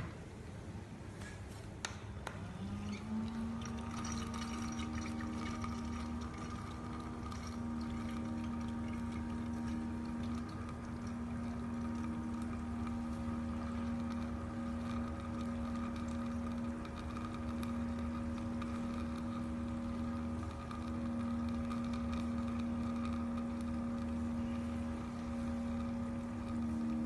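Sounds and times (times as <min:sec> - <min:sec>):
small electric water pump humming: 0:01.8 - 0:27.0.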